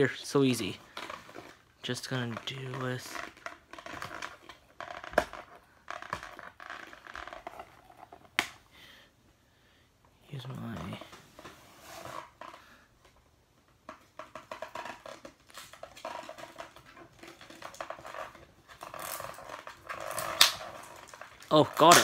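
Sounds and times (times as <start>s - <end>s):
packaging being opened by hand: 14.2s - 22.0s.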